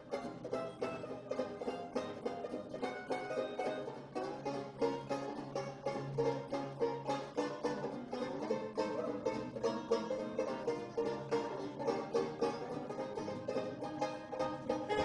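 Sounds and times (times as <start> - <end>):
strummed plucked strings: 0.0 - 15.0.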